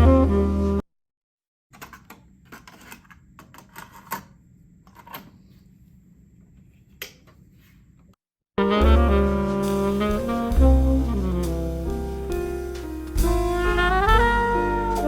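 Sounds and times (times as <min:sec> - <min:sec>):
saxophone jazz music: 0:00.0 - 0:00.8, 0:08.6 - 0:15.0.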